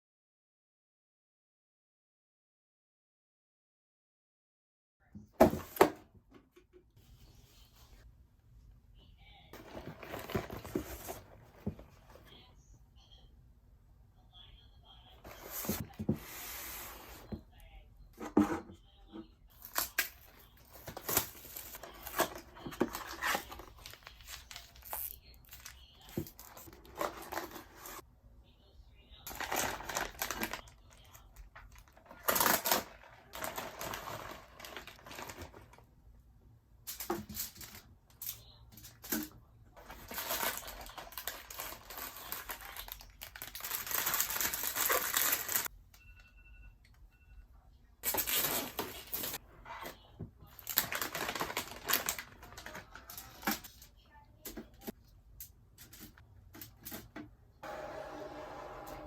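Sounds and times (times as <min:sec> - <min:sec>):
food packaging crinkling: 0:19.6 - 0:28.0, 0:29.3 - 0:35.7, 0:39.9 - 0:45.7, 0:50.5 - 0:53.6.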